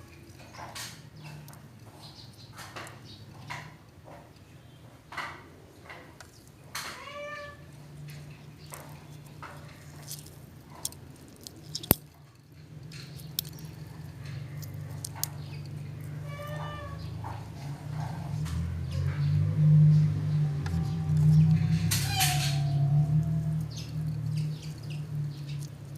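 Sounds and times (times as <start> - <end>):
cat meowing: 6.8 - 7.7, 16.2 - 17.4, 20.4 - 23.7.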